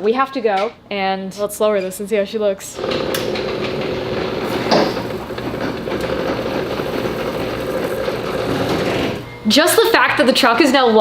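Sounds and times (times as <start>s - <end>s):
vehicle lift humming: 2.8s - 9.6s.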